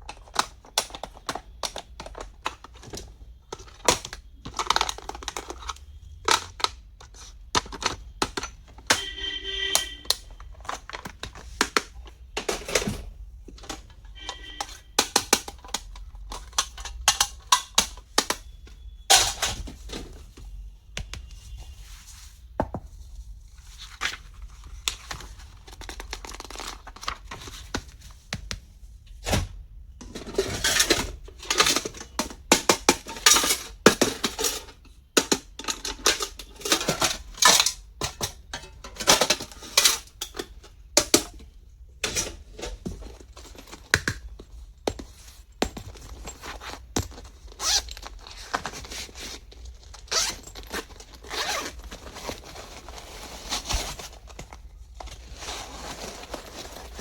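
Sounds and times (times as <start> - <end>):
plastic items clicking: 0.0 - 9.2, 9.8 - 19.8.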